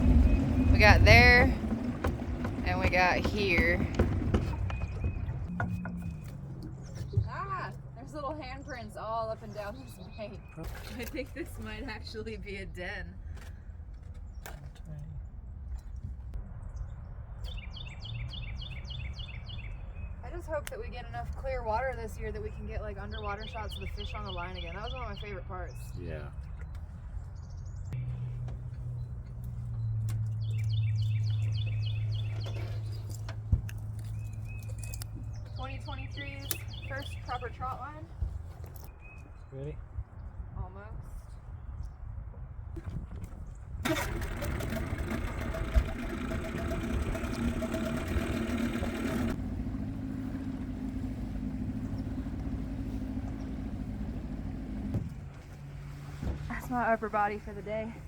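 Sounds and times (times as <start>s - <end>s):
boat motor running: 0.0s - 12.0s, 42.8s - 58.0s
bird chirping: 2.2s - 11.1s, 16.7s - 20.3s, 21.7s - 33.3s, 33.9s - 38.0s.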